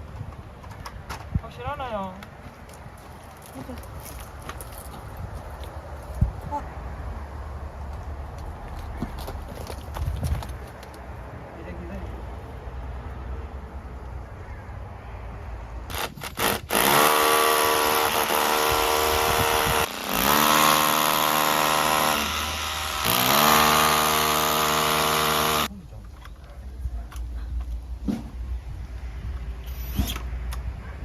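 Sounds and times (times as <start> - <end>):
electric power drill whining: 15.9 - 25.7.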